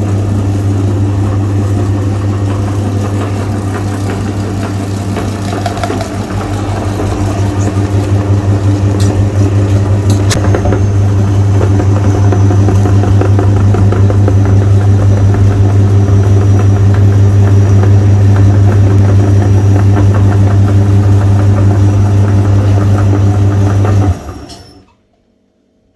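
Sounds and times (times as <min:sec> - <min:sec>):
electric meat grinder running: 0:00.0 - 0:24.8
rapid crackle of grinding: 0:02.4 - 0:20.1.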